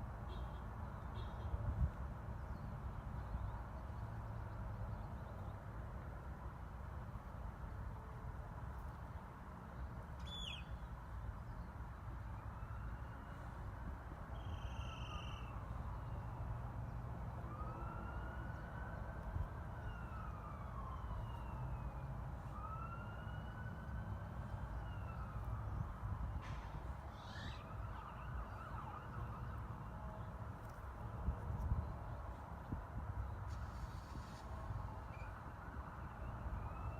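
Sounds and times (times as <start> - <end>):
siren wailing: 17.4 - 25.8, 27.3 - 30.0.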